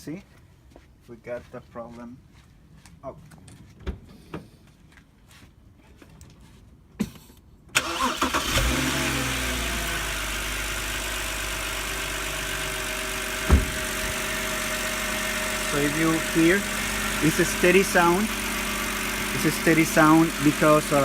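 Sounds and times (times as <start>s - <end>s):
car engine starting and idling: 7.7s - 21.0s
sharp knock: 13.5s - 13.8s.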